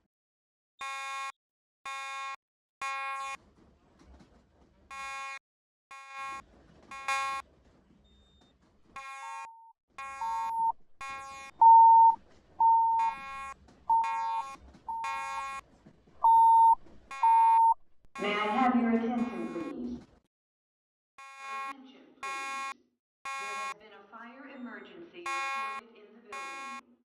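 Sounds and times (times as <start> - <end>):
buzzy fire alarm horn blasts: 0.8 - 1.3, 1.9 - 3.4, 4.9 - 7.4, 25.3 - 25.8, 26.4 - 26.8
single-pitched alarm beep: 10.2 - 10.8, 11.6 - 13.2, 13.9 - 15.2, 16.2 - 17.8.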